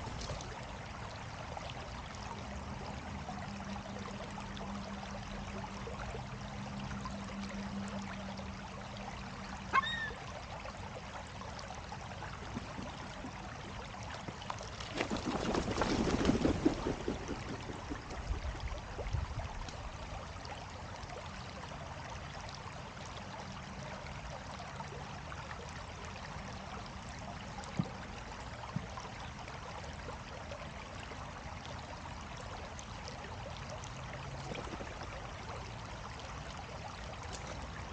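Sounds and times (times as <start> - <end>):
moving water: 0.0 - 37.9
gull call: 9.7 - 10.2.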